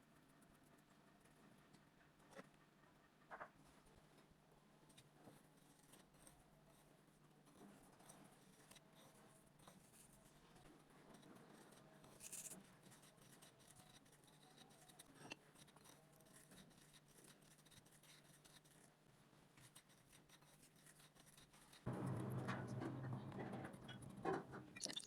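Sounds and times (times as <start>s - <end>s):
faint scratching: 4.8s - 24.6s.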